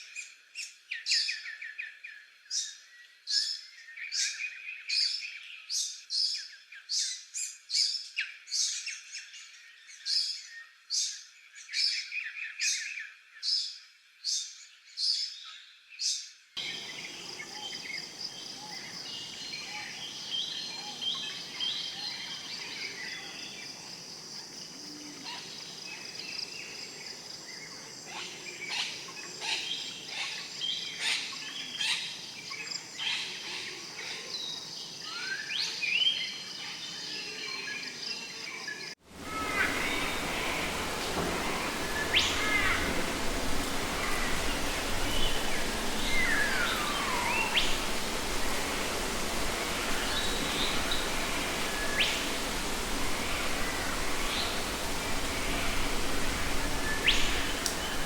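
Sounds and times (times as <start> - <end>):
chorus of birds chirping: 16.6 - 58.0
steady background hiss: 16.6 - 58.0.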